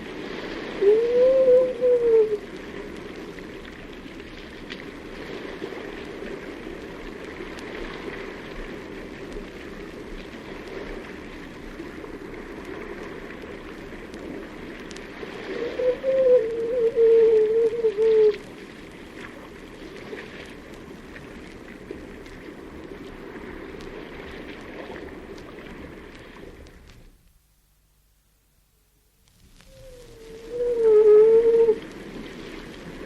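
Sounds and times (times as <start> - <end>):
water noise in a cave: 0.0 - 33.0
seal howling: 0.8 - 2.5, 15.5 - 18.4, 29.6 - 32.0.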